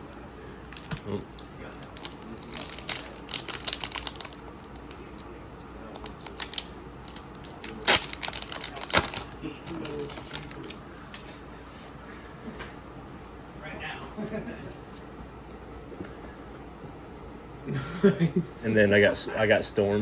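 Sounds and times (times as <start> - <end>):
trading cards clicking and snapping: 6.0 - 11.3.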